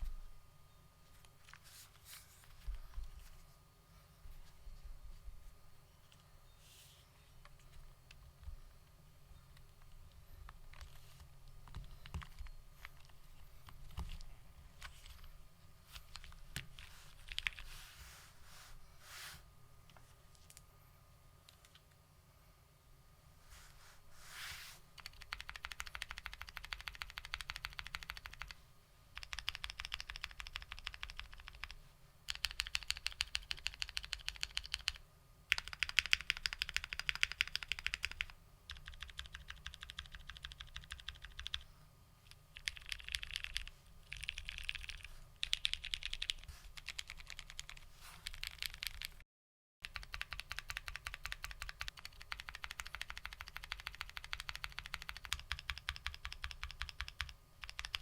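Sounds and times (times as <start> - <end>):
mechanical keyboard typing: 11.6 - 14.2, 16.1 - 17.6, 25.0 - 28.6, 29.2 - 41.7, 42.3 - 49.2, 49.8 - 58.0.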